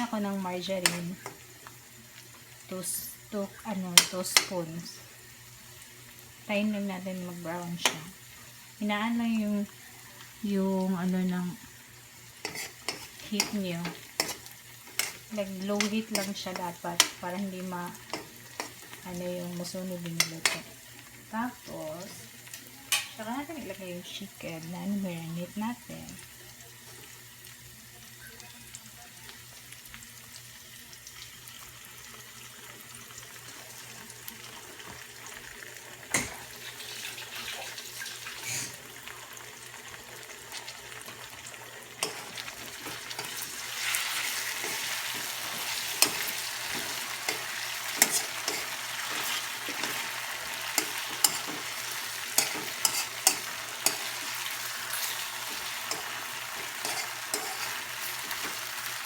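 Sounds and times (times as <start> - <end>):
food sizzling in a pan: 0.0 - 59.0
utensil clicking against pan: 4.0 - 4.6, 12.4 - 17.2, 44.6 - 50.0, 50.7 - 54.4, 55.0 - 58.6.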